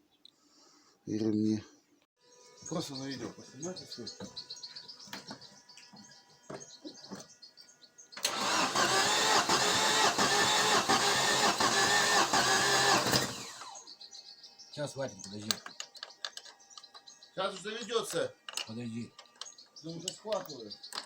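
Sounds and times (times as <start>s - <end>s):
engine cranking on starter: 8.2s - 13.8s.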